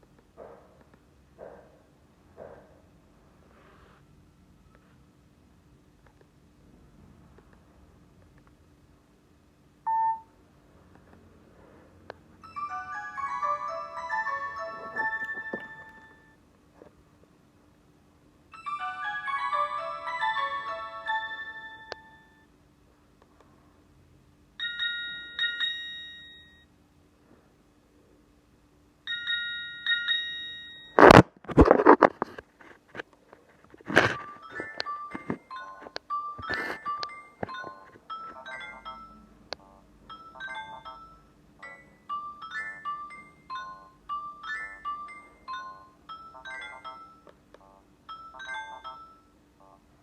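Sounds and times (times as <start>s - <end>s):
phone alert chime: 9.9s - 10.3s, 12.4s - 16.4s, 18.6s - 22.4s, 34.1s - 49.8s
phone beep: 9.9s - 10.3s, 34.0s - 42.0s
polyphonic ringtone melody: 12.4s - 16.4s, 18.5s - 22.5s, 24.6s - 26.6s, 29.1s - 31.2s, 34.1s - 49.8s.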